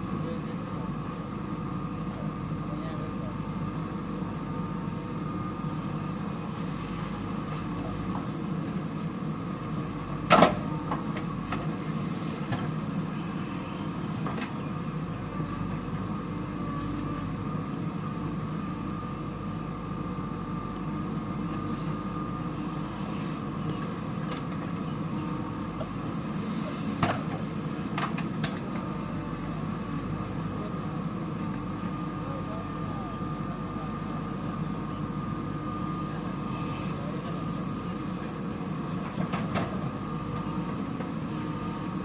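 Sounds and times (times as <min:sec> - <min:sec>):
diesel engine running: 0:00.0 - 0:42.0
hydraulic whine: 0:04.2 - 0:28.2.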